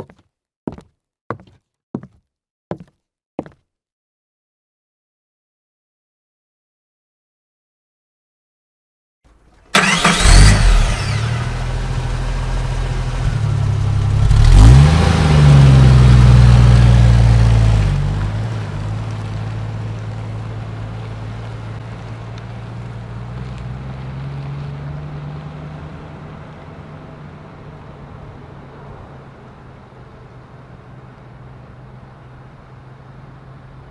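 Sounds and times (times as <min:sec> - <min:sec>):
car engine revving: 0:09.6 - 0:28.0.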